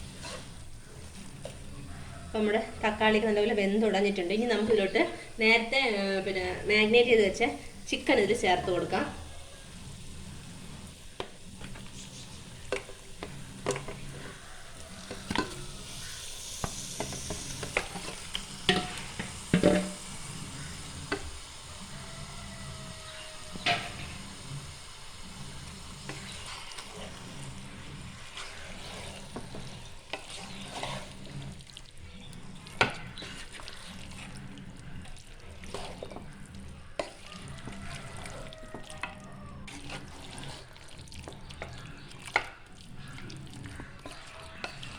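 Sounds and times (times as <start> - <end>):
chicken sizzling in a pot: 0.0 - 44.9
spoon knocking against pot: 16.6 - 20.1.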